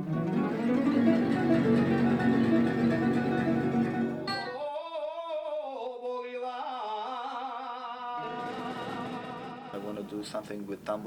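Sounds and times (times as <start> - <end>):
plucked tambura: 0.0 - 4.6.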